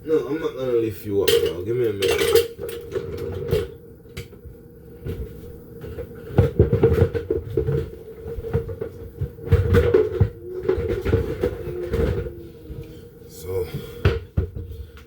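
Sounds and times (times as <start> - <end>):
kitchen things knocking and clunking: 1.2 - 4.3, 5.8 - 12.8.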